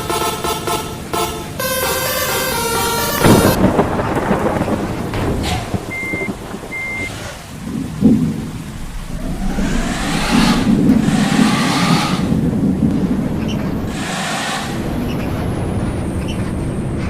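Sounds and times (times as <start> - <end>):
rising whine: 8.6 - 12.6
bus engine and road noise: 14.8 - 17.0.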